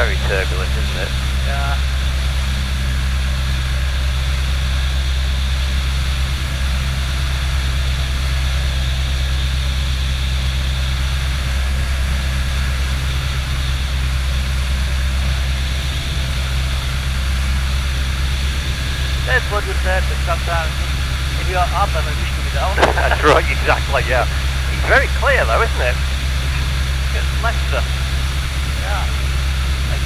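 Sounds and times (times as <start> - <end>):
propeller engine droning: 0.0 - 30.0
constant hiss: 21.3 - 27.9.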